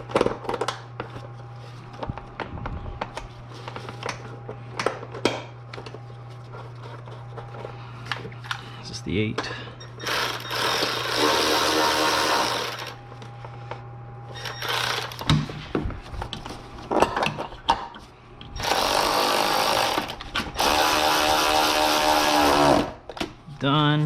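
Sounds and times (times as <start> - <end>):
power tool spinning a bolt: 9.9 - 13.0, 14.3 - 15.3, 18.6 - 23.0.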